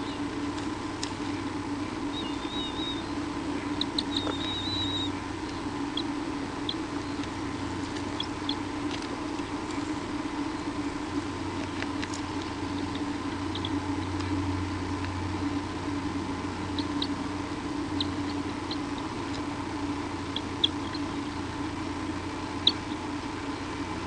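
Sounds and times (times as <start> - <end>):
high wavering bird chirps: 0.0 - 0.4, 1.3 - 8.9, 12.2 - 14.6, 16.6 - 21.8, 22.4 - 23.8
steady electrical hum: 0.0 - 24.0
scratchy clicks of bird moving: 3.7 - 14.4.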